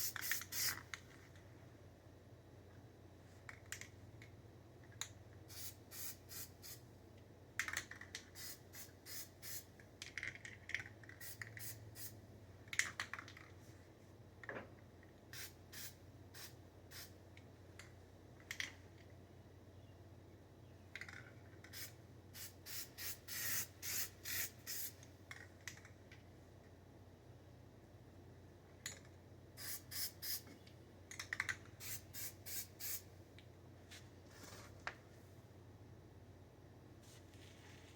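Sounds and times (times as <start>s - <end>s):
spray paint can hissing: 0.0s - 0.8s, 5.5s - 6.8s, 8.3s - 9.7s, 11.2s - 12.2s, 15.3s - 17.1s, 21.6s - 25.0s, 29.6s - 30.4s, 31.8s - 33.0s.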